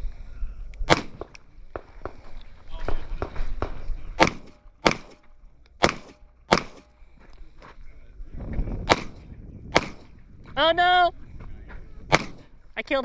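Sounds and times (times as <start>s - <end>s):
airsoft pistol shots: 0.9s - 1.4s, 3.6s - 5.2s, 5.8s - 6.9s, 8.8s - 10.2s, 12.1s - 12.5s.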